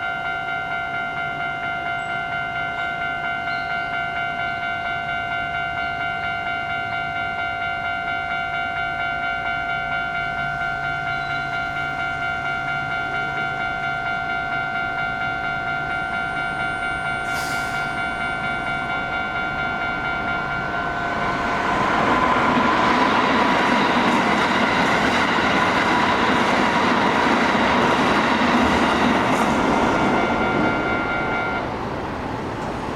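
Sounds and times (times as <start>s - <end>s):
level crossing bell clanging: 0.0s - 31.7s
train wheels rolling on rails: 15.9s - 32.9s.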